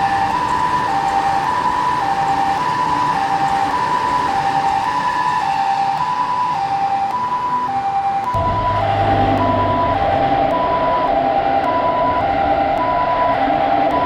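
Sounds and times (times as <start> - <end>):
two-tone crossing alarm: 0.0 - 14.0
low rumble: 8.4 - 11.4.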